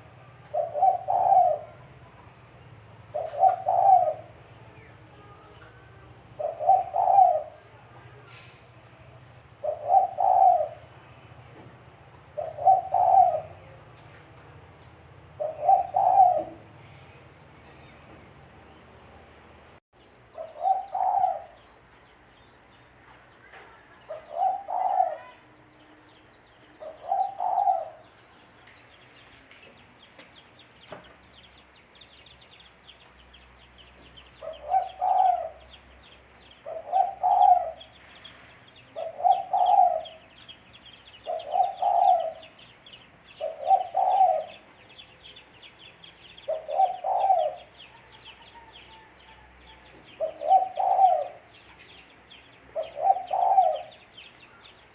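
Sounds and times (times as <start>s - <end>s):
dove cooing: 0.0s - 2.1s, 3.1s - 4.5s, 6.2s - 7.7s, 9.6s - 11.0s, 12.3s - 13.8s, 15.3s - 16.8s, 20.4s - 21.6s, 24.1s - 25.5s, 26.8s - 28.1s, 34.3s - 35.8s, 36.6s - 40.4s, 41.0s - 42.7s, 43.3s - 45.4s, 46.3s - 51.6s, 52.7s - 54.3s
small birds chirping: 0.0s - 54.9s.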